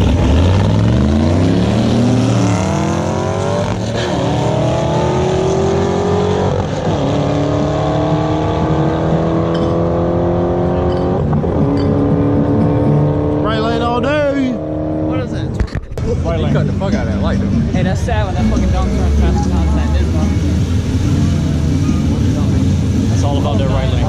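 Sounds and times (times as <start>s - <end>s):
car engine accelerating hard: 0.0s - 15.6s.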